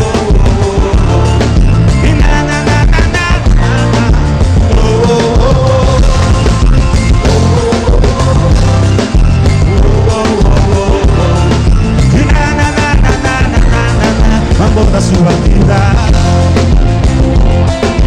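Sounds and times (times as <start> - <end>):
loud band music with heavy bass: 0.0 - 18.0.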